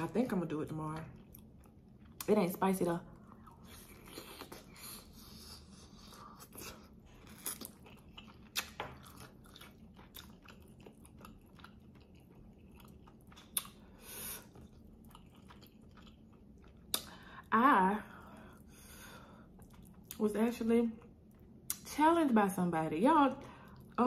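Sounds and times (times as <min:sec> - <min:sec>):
person chewing fried chicken: 0:01.1 - 0:02.2, 0:03.2 - 0:17.4, 0:18.5 - 0:20.2.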